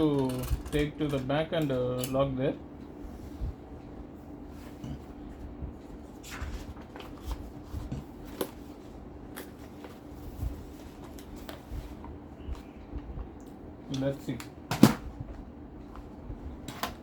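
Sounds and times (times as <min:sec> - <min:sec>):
paper rustling: 0:06.1 - 0:08.7.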